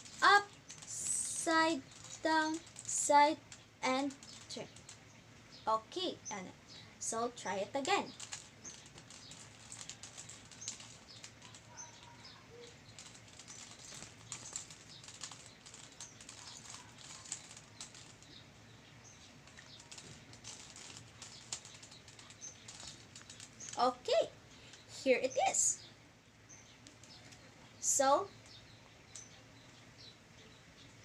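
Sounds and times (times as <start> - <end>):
puzzle cube plastic clicks: 0.0 - 5.1, 7.8 - 12.1, 12.7 - 18.4, 19.2 - 23.8.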